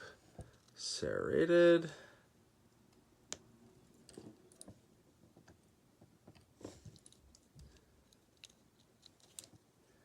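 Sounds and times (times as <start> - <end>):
small lock pins clicking: 7.0 - 9.6.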